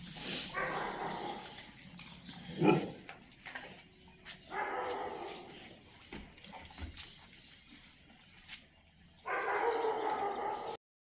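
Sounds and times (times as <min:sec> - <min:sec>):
dog barking: 0:00.5 - 0:01.4, 0:04.5 - 0:05.5, 0:09.2 - 0:10.8.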